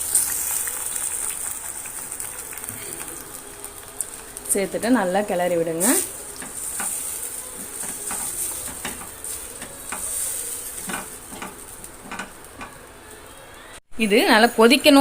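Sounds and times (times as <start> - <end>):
paste sizzling in hot oil: 0.0 - 13.2
spoon scraping against a pan: 5.8 - 12.9.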